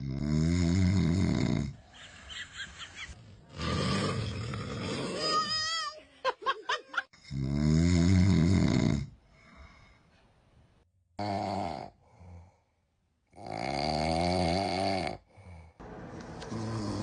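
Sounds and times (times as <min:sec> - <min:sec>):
man snoring: 0:00.0 - 0:01.8, 0:03.2 - 0:05.4, 0:07.2 - 0:09.2, 0:11.2 - 0:12.6, 0:13.3 - 0:15.8, 0:16.5 - 0:17.0.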